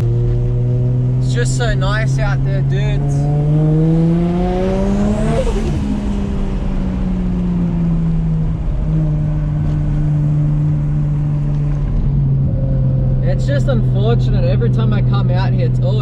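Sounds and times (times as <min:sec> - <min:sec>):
car engine revving: 0:00.0 - 0:16.0.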